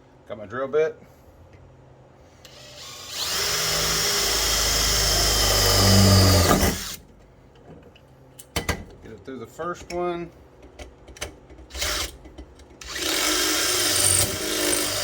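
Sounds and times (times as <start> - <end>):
power drill boring into metal: 2.5 - 7.0, 12.8 - 15.0.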